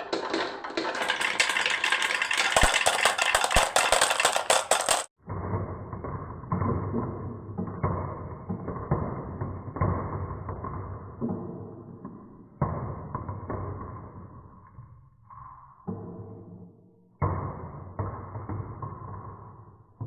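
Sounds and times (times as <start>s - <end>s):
marbles rolling on wooden run: 0.0s - 11.8s.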